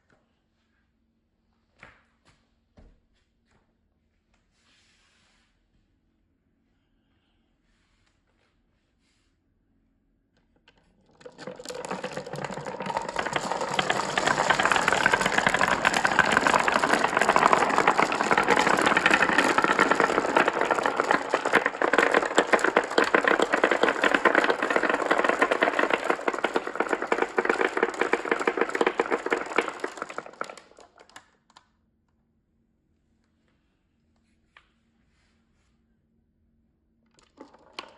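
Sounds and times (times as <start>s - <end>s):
marbles clattering on a track: 11.1s - 31.3s, 37.2s - 37.9s.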